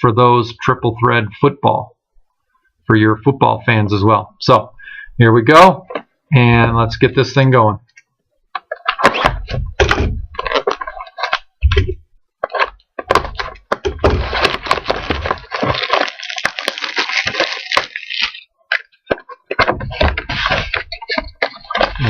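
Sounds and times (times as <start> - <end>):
box cracking and thunking: 8.6 - 22.0
wrapper and cardboard tearing: 10.3 - 11.5, 12.4 - 22.0.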